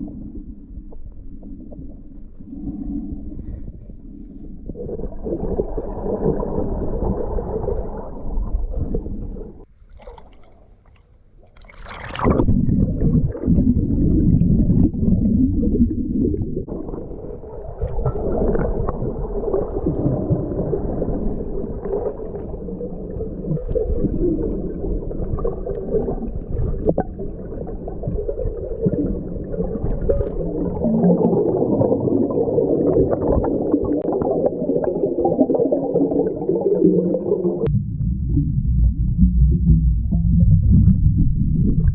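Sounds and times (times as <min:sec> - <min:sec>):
underwater rumbling and gurgling: 0:00.0 - 0:41.9
water splash: 0:05.4 - 0:36.4.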